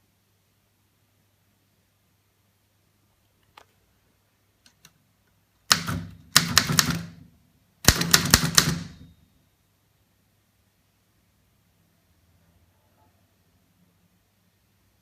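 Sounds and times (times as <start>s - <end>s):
typewriter typebar strikes: 5.7s - 9.2s.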